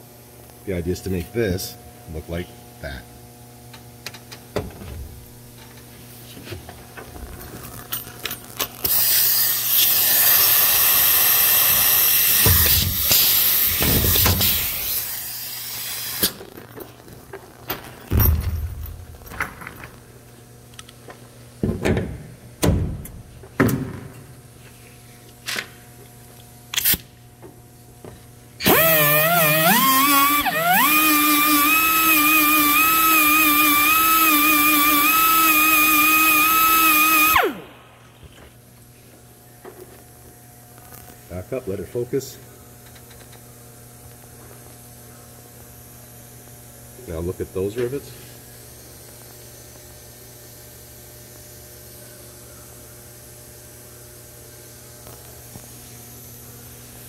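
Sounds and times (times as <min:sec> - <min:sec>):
power tool running with hiss: 0:08.8 - 0:16.4, 0:28.6 - 0:38.0.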